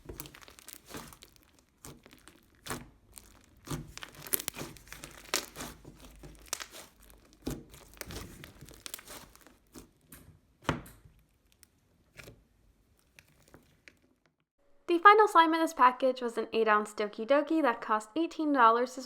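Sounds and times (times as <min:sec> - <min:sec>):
slime squished by hand: 0:00.0 - 0:14.2.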